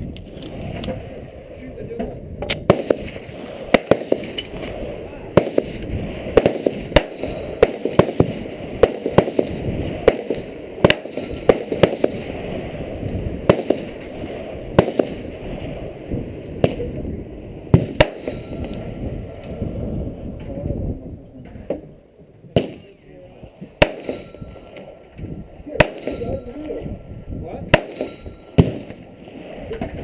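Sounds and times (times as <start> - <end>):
steady low background noise: 0.0 - 29.7
gunshots: 2.5 - 12.6, 13.4 - 15.4, 17.7 - 18.9, 22.5 - 23.0, 23.8 - 24.9, 25.7 - 26.6, 27.7 - 29.6.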